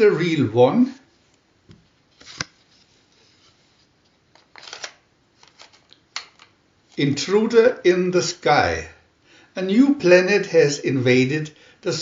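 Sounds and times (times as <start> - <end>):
paper rustle: 2.1 - 7.0.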